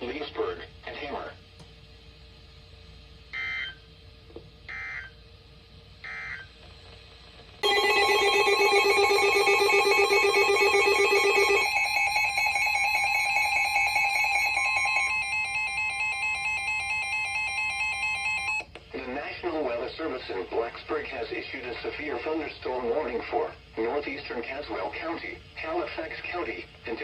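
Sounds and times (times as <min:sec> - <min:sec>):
warbling data bursts: 0:07.6 - 0:16.6
electronic attention tone: 0:07.6 - 0:18.6.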